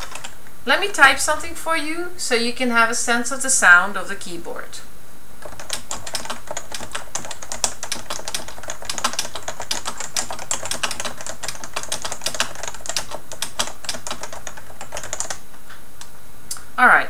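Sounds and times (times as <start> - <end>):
keyboard typing: 0.0 - 0.4, 5.4 - 15.4.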